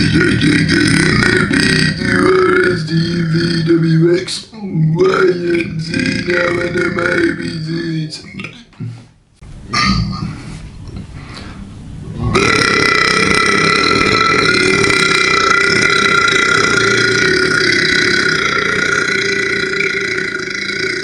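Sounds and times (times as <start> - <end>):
person burping: 0.0 - 4.0, 9.7 - 10.4, 12.2 - 21.0.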